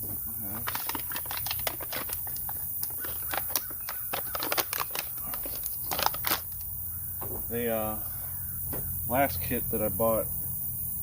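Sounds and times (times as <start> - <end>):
plastic packaging tearing: 0.4 - 6.7.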